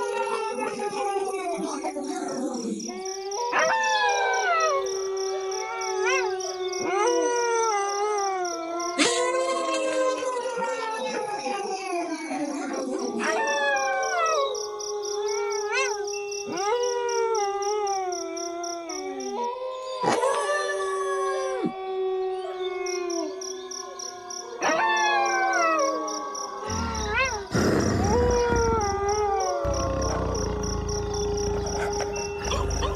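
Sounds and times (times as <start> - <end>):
crickets chirping: 0.8 - 9.1, 11.1 - 20.0, 22.8 - 32.9
wolves howling: 2.9 - 11.9, 12.8 - 32.9
rumbling noise: 26.7 - 32.9.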